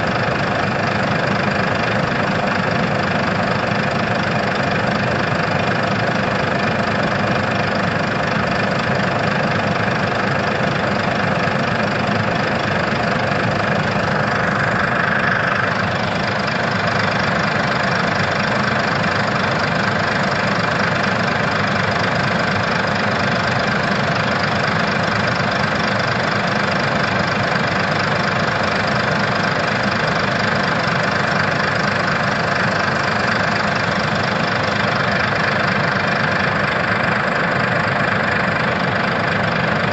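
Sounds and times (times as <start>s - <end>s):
heavy machinery diesel engine: 0.0s - 39.9s.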